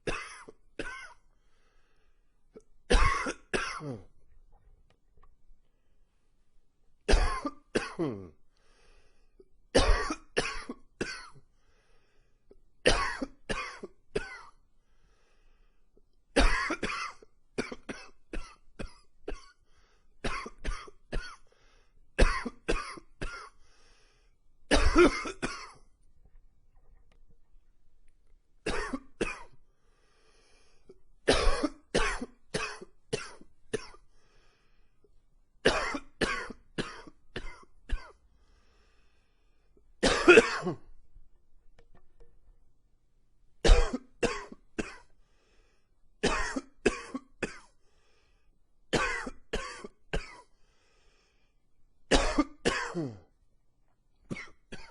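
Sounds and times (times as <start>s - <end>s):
man coughing: 0.0s - 1.2s, 2.9s - 4.1s, 7.1s - 8.4s, 9.8s - 11.4s, 12.9s - 14.5s, 16.4s - 19.5s, 22.2s - 23.5s, 24.7s - 25.8s, 28.7s - 29.5s, 31.3s - 34.0s, 35.7s - 38.2s, 40.0s - 40.9s, 43.6s - 45.0s, 46.2s - 47.7s, 49.0s - 50.4s, 52.1s - 53.3s.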